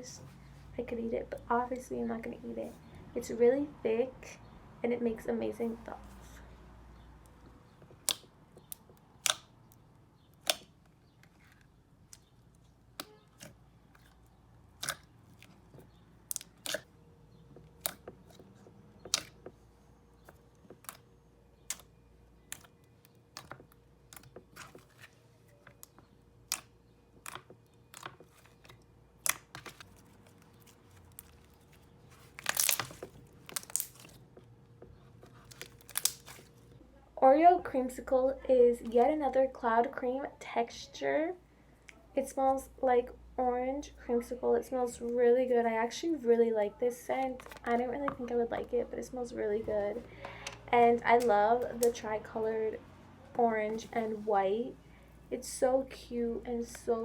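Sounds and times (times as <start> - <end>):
slime clicking and popping: 8.0 - 9.8, 10.4 - 10.8, 14.7 - 15.5, 16.3 - 16.9, 21.6 - 24.7, 29.2 - 29.8, 35.8 - 36.4.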